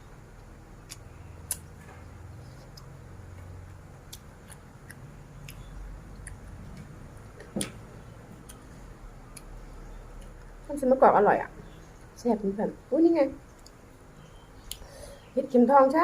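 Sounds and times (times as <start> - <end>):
crunchy chewing: 0.3 - 7.6.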